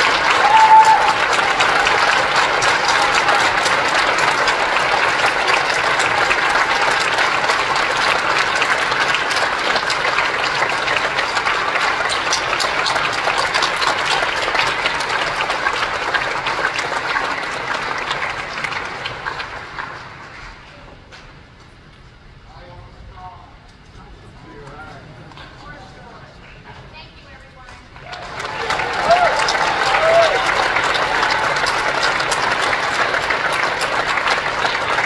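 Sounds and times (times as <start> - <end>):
audience applauding: 0.0 - 20.7, 28.0 - 35.0.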